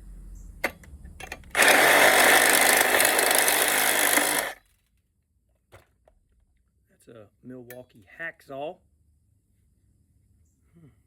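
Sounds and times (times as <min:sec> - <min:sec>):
saw clicks: 0:01.4 - 0:04.6
power saw cutting metal: 0:01.5 - 0:04.6.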